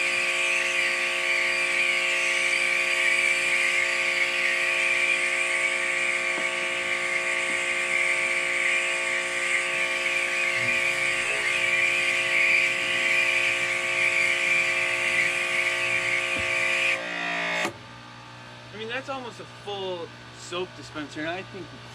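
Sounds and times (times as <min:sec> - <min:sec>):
water spray hissing: 0:00.0 - 0:17.0
pressure washer motor whine: 0:00.0 - 0:17.8.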